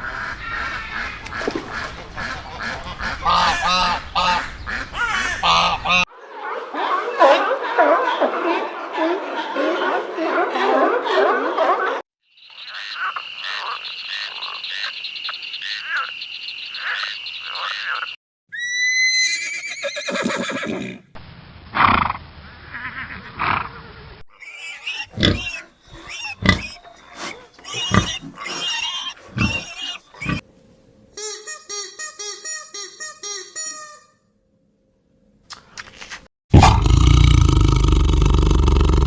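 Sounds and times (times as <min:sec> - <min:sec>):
farm animal sounds: 0:00.0 - 0:06.0, 0:24.4 - 0:30.4.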